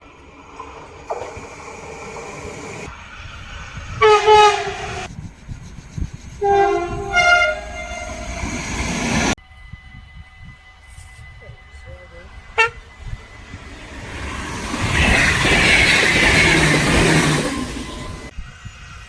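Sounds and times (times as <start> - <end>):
train rumble: 0.0 - 19.0
train horn blasts: 4.0 - 5.1, 6.4 - 8.5, 12.5 - 13.0.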